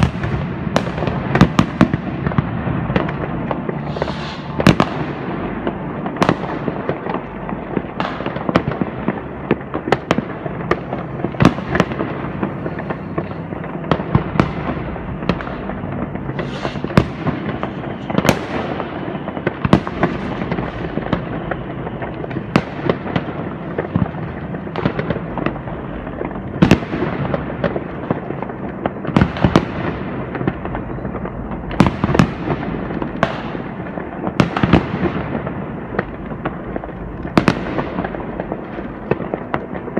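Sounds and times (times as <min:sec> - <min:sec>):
firecrackers crackling: 0:00.0 - 0:39.9
fireworks bangs: 0:00.0 - 0:39.9
rocket hiss: 0:03.8 - 0:05.1, 0:16.3 - 0:18.1.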